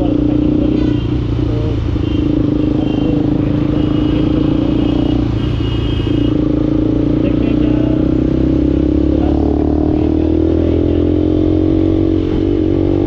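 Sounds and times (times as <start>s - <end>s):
motorcycle engine running: 0.0s - 13.0s
road noise: 0.0s - 13.0s.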